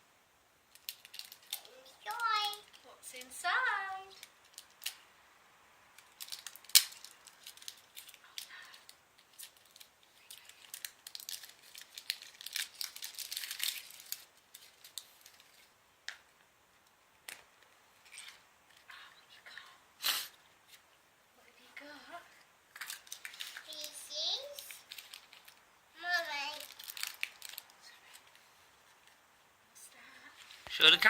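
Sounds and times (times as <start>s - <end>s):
foil and plastic wrapping crinkling: 0.7s - 2.8s, 6.0s - 15.7s, 22.8s - 28.4s
sharp clicks and snaps: 0.7s - 3.3s, 4.1s - 5.0s, 5.9s - 14.2s.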